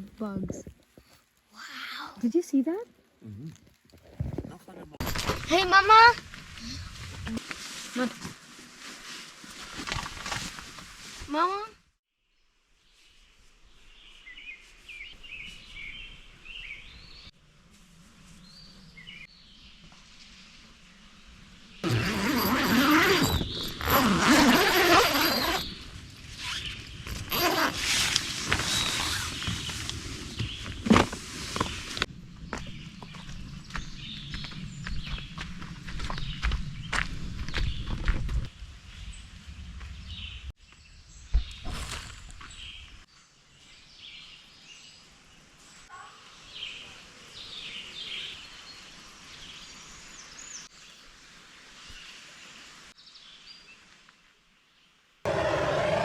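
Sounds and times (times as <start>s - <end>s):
zipper rasping: 21.8s - 25.8s, 26.4s - 29.4s.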